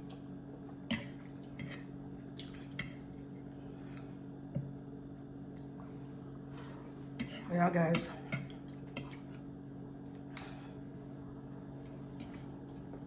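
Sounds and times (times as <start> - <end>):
steady low hum: 0.0 - 13.0
chewing smacks: 5.5 - 5.8.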